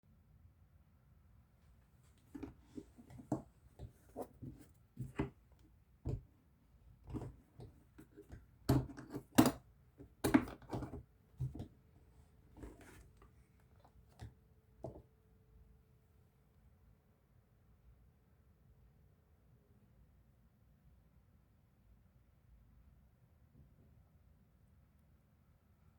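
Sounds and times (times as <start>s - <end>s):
plastic tools and case rattling: 2.2s - 5.4s, 7.1s - 11.7s, 12.6s - 13.3s.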